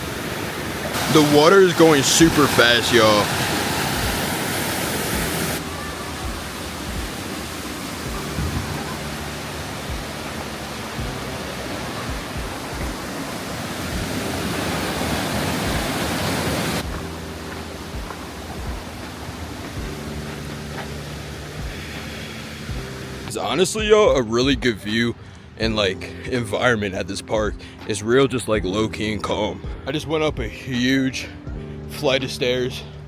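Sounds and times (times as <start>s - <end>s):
waterfall rushing: 0.0s - 23.4s.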